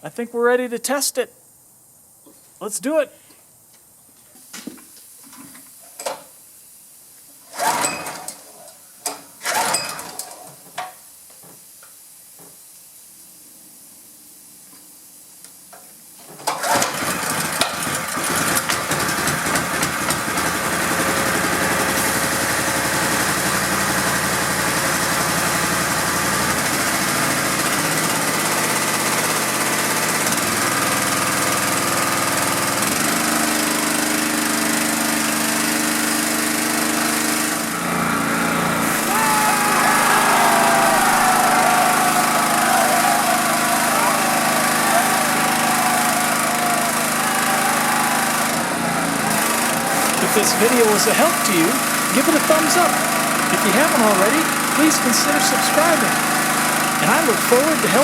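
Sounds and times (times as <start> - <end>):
recoil starter tugs: 7.5 - 8.4, 9.0 - 10.4, 16.4 - 58.0
engine running steadily: 17.2 - 58.0.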